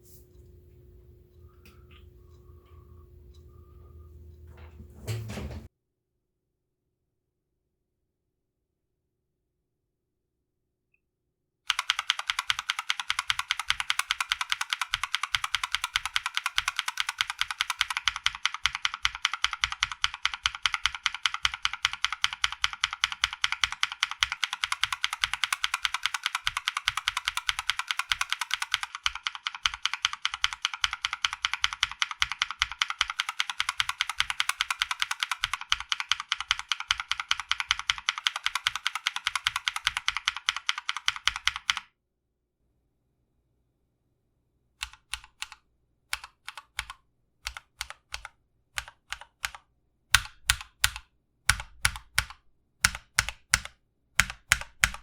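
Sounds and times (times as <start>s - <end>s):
mechanical keyboard key clacking: 11.7s - 41.8s, 44.8s - 55.0s.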